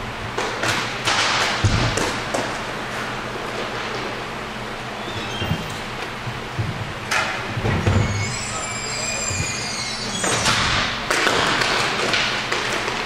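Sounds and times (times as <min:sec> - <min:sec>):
hockey sticks and puck taps: 0:00.3 - 0:02.6, 0:10.4 - 0:13.0.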